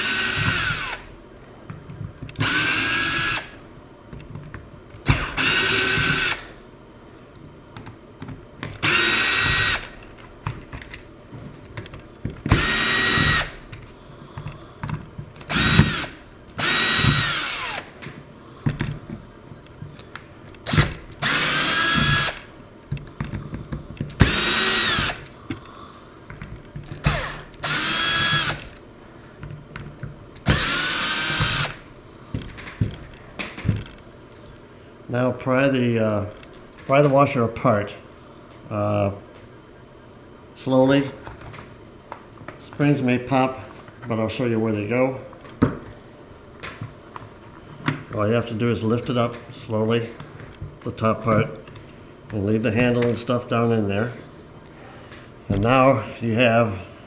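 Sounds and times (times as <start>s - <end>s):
power drill motor whining: 0.0s - 1.2s, 1.9s - 4.3s, 5.0s - 6.6s, 8.6s - 10.9s, 11.8s - 33.0s.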